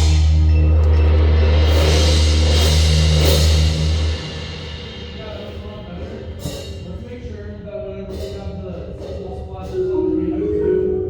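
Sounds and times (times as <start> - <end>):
ringing mallet notes: 0.0 - 2.8, 9.6 - 11.0
low sustained bass note: 0.0 - 4.7, 9.8 - 11.0
cymbal wash: 0.0 - 7.4.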